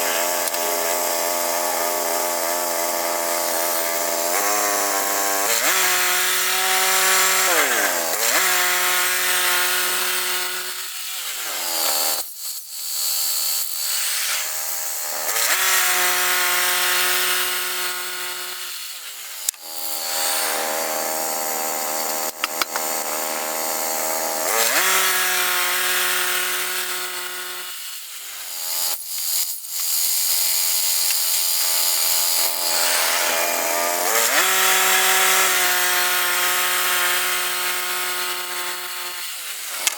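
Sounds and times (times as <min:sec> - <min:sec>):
sharp clicks and clanks: 0:22.0 - 0:23.1, 0:39.6 - 0:39.9.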